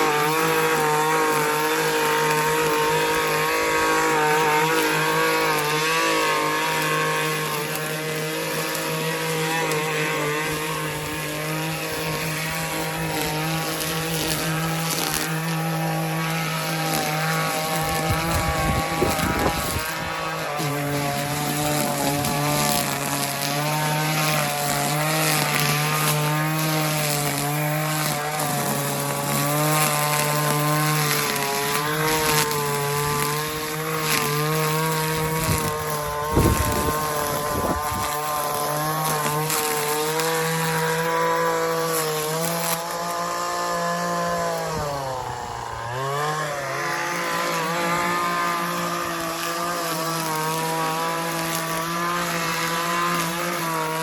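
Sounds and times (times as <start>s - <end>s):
small engine running: 0.0s - 54.0s.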